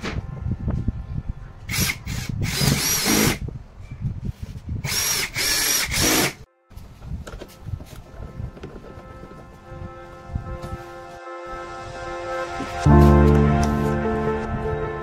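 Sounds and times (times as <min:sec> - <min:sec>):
power drill motor whine: 0:01.7 - 0:03.4, 0:04.8 - 0:06.4.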